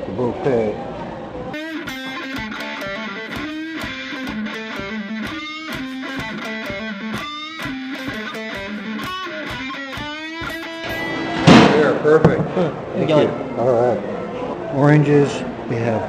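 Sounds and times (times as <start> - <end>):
fast plucked guitar notes: 1.5 - 11.2.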